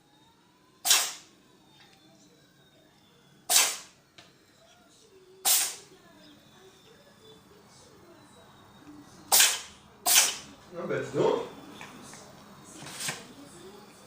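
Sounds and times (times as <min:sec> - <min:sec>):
cat sneezing: 0:00.8 - 0:01.2, 0:03.5 - 0:03.9, 0:05.4 - 0:05.9, 0:09.3 - 0:10.5.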